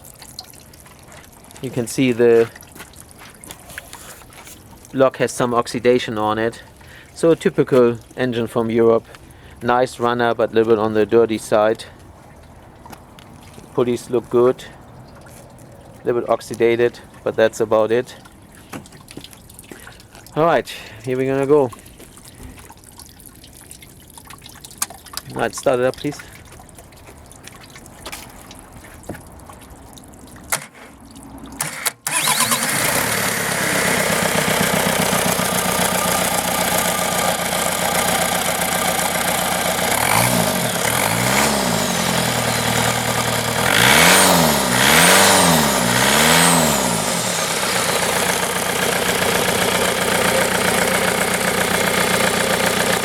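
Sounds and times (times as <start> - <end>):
diesel engine starting and idling: 31.5 - 53.0
engine revving: 31.6 - 53.0.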